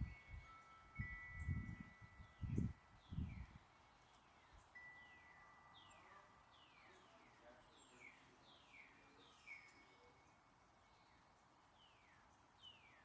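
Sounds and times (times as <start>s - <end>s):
wind gusts on microphone: 0.0s - 3.6s
faint wind chime: 0.0s - 11.6s.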